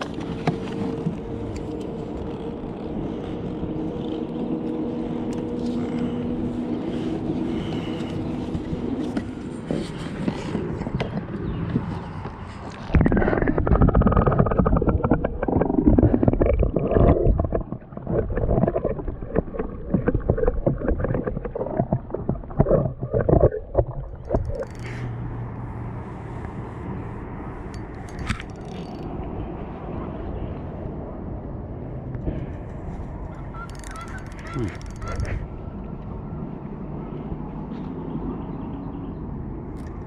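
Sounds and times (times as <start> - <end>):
water splashing around kayak: 12.9 - 29.6, 32.9 - 35.9.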